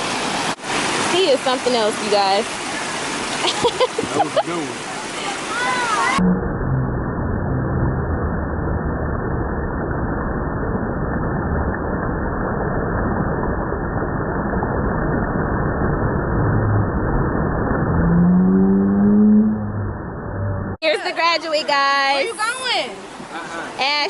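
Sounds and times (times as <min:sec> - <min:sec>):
creek water rushing: 0:00.0 - 0:06.2, 0:20.8 - 0:24.0.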